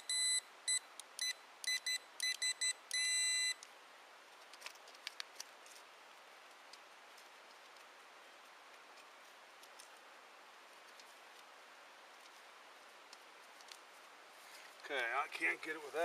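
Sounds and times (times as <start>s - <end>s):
pinpointer beeping: 0.0s - 3.6s.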